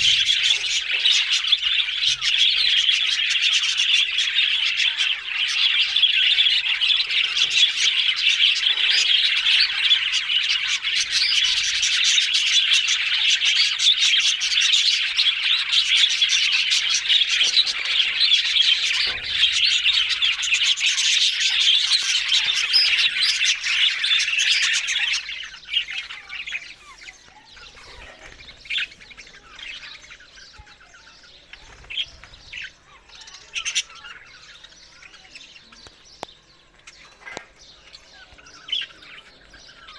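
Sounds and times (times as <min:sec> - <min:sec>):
budgerigars chattering and warbling: 0:00.0 - 0:39.9.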